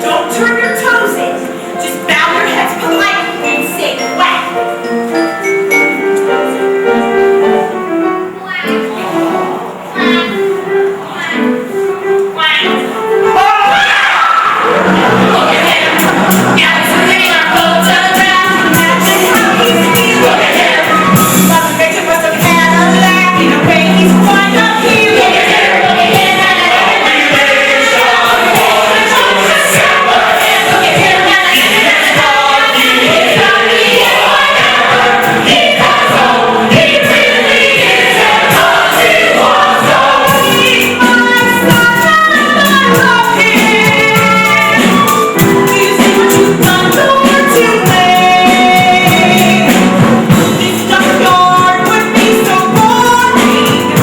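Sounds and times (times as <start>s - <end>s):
live instrumental accompaniment: 0.0s - 54.0s
group singing a show tune: 13.6s - 54.0s.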